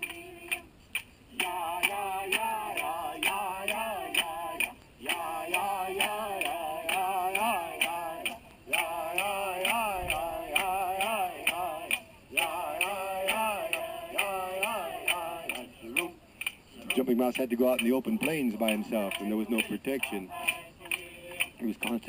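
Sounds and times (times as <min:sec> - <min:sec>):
sharp percussive ticks: 0:00.0 - 0:22.0
man chanting: 0:16.8 - 0:20.4, 0:21.4 - 0:22.0.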